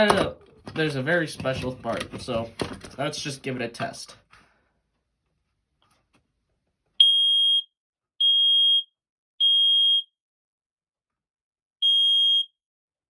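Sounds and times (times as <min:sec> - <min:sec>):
smoke alarm beeping: 0:07.0 - 0:10.1, 0:11.8 - 0:12.6.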